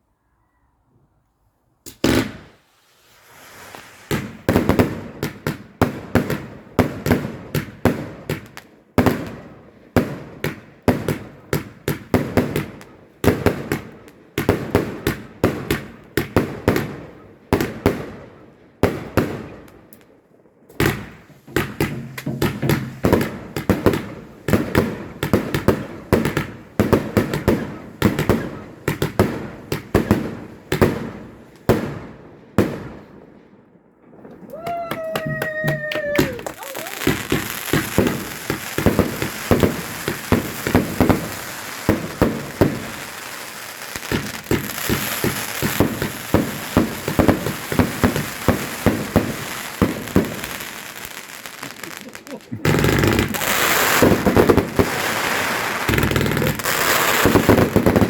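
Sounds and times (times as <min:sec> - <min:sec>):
firework bangs and crackles: 0:01.9 - 0:58.0.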